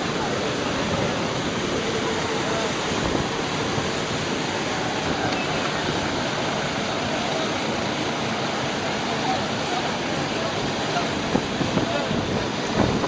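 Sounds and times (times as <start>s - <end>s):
faint voices: 4.7s - 13.0s.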